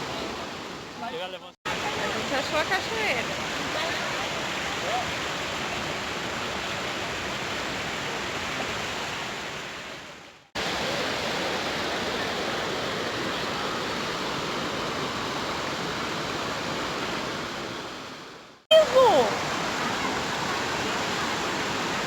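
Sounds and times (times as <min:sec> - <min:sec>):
waterfall rushing: 0:18.7 - 0:22.0.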